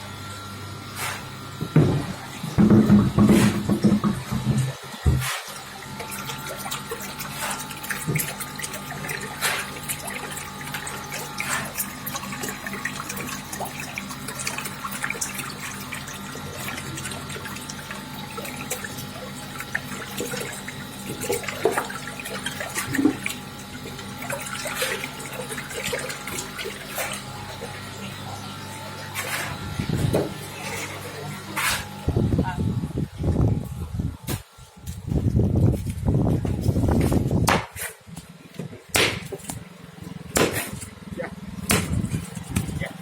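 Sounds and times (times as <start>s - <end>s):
mechanical hum: 0.0s - 43.0s
water running and splashing: 5.6s - 28.1s.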